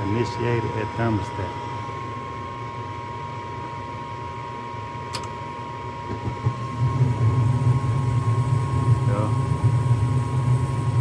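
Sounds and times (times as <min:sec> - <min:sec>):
fan motor humming with whine: 0:00.0 - 0:11.0
sharp click: 0:05.1 - 0:05.4.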